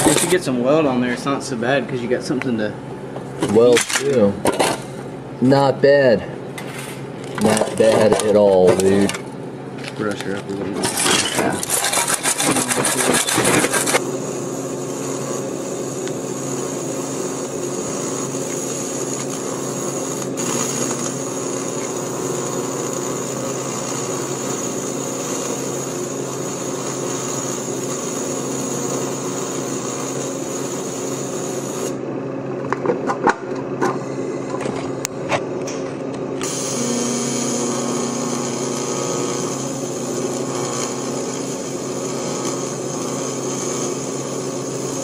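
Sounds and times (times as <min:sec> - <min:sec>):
welding arc buzzing: 0:00.0 - 0:45.0
harsh scratchy scrubbing: 0:10.7 - 0:14.0.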